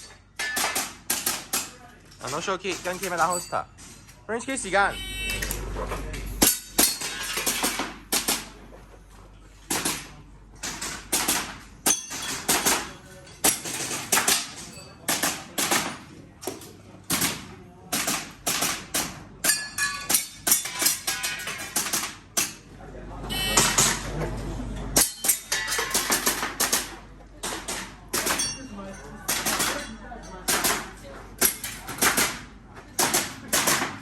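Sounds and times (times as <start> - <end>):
short ringing tone: 23.3 - 24.0.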